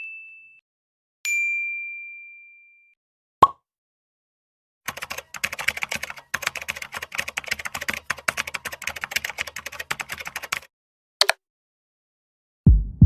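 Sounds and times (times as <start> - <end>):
keyboard typing clicks: 4.9 - 11.4.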